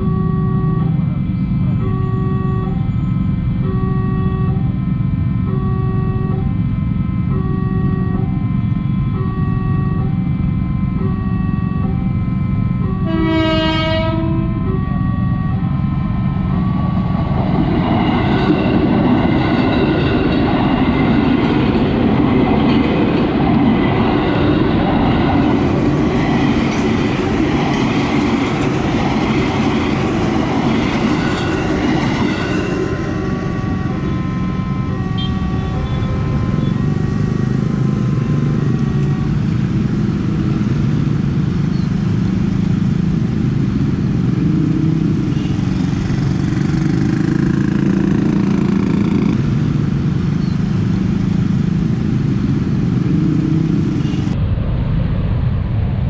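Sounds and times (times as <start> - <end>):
crossing warning bell: 0.0 - 13.2, 14.3 - 40.4
train wheels rumbling: 12.6 - 54.4.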